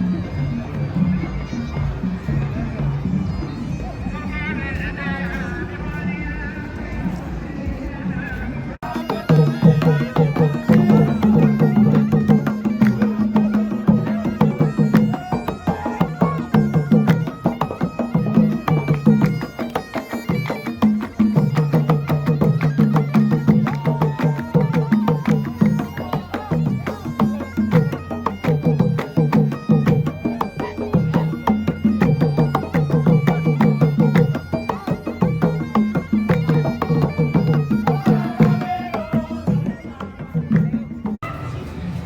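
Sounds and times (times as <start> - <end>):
traditional music melody: 0.0 - 41.3
hand drums beating: 8.8 - 41.2.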